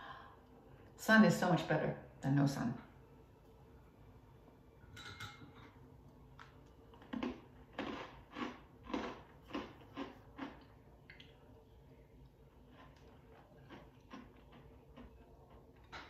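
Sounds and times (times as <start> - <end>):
person chewing a snack: 6.4 - 16.0.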